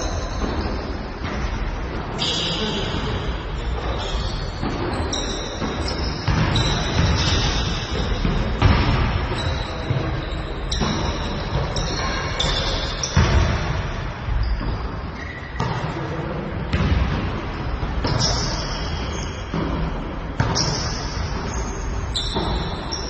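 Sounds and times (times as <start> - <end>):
shoes squeaking on gym floor: 3.6 - 8.2, 9.3 - 13.4, 14.3 - 15.9, 18.0 - 19.5, 20.4 - 23.0
ball bouncing: 3.6 - 16.0, 16.7 - 23.0.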